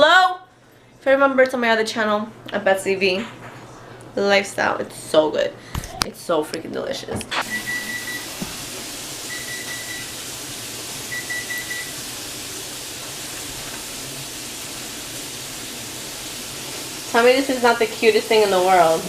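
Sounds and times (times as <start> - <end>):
electronic appliance beeps: 7.4 - 8.4, 9.2 - 10.2, 11.1 - 12.0
steady hiss: 7.4 - 19.0.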